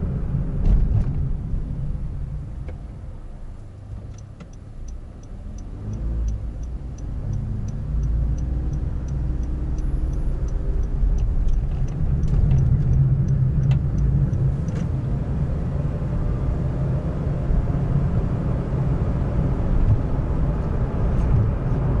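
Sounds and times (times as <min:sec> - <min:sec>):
car engine and road rumble: 0:00.0 - 0:22.0
light even ticking: 0:04.1 - 0:14.8.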